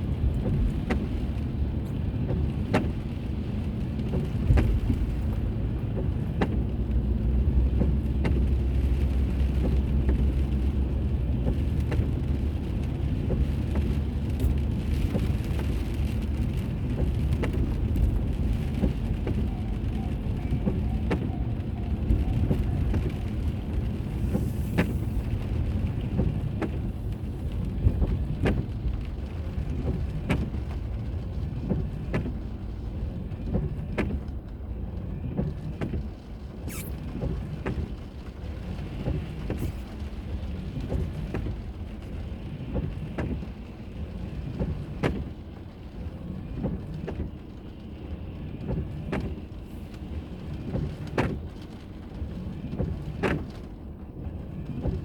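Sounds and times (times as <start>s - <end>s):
road and engine rumble: 0.0s - 55.0s
brief high hiss: 36.7s - 37.0s.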